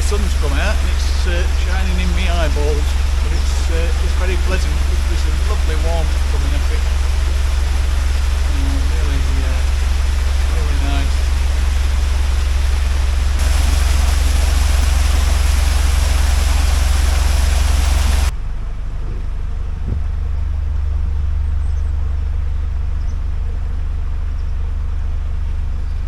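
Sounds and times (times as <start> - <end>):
loud rushing hiss: 0.0 - 18.3
diesel engine throbbing: 0.0 - 25.9.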